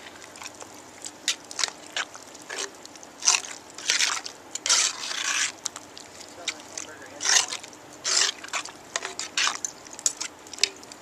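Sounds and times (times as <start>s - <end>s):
spoon scraping a pot: 3.3s - 5.6s, 7.2s - 10.8s.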